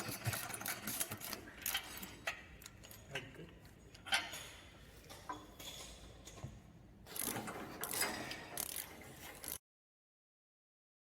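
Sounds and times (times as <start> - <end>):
ratchet wrench clicking: 8.6 - 9.6.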